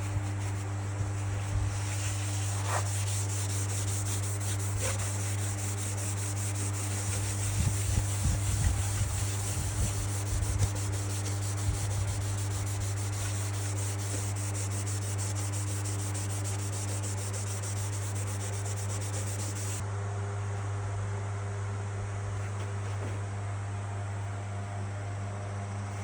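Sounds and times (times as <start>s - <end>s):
sandpaper rubbing on wood: 0.0s - 19.8s
constant low hum: 0.0s - 26.0s.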